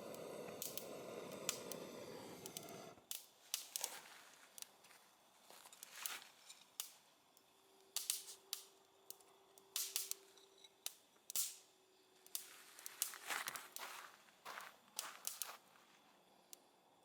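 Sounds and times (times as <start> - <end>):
wood fire crackling and popping: 0.0 - 4.8, 8.0 - 10.2, 10.8 - 11.6, 12.3 - 14.0.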